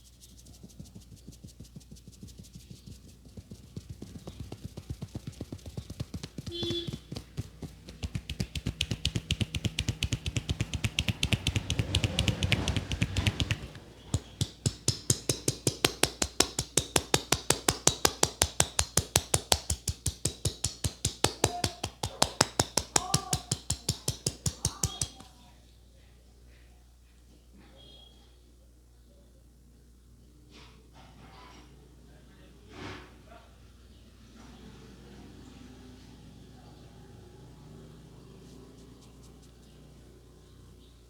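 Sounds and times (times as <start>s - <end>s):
hands slapping head rhythmically: 0.6s - 25.3s.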